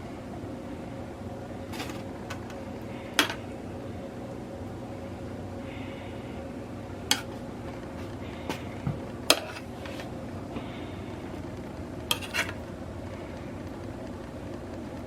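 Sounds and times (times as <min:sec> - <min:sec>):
steady low hum: 0:00.0 - 0:15.0
metal utensils clinking on cookware: 0:12.1 - 0:12.6.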